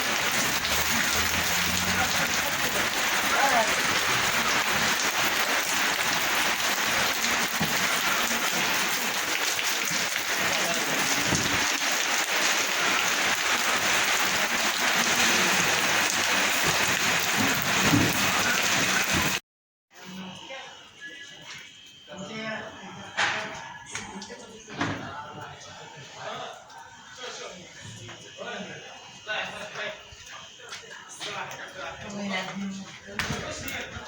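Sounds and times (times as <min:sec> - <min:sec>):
heavy rain: 0:00.0 - 0:19.4.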